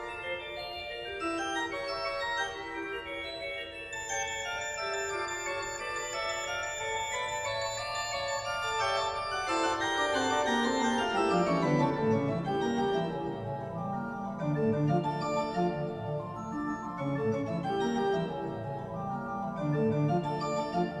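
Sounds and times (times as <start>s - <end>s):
organ-like keyboard chords: 9.6s - 21.0s.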